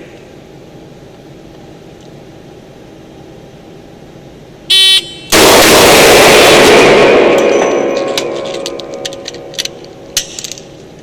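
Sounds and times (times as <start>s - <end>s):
shot timer start beep: 4.7s - 5.3s
loud revolver shot: 5.3s - 7.8s.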